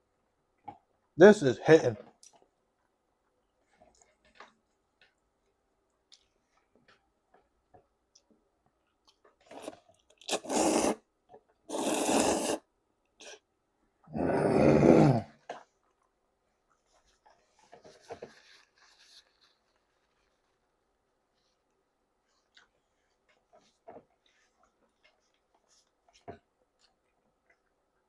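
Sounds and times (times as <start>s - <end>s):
quiet chewing: 2.0s - 10.5s, 22.2s - 28.0s
loud noodle slurps: 9.4s - 11.1s, 11.7s - 13.4s, 14.2s - 15.4s.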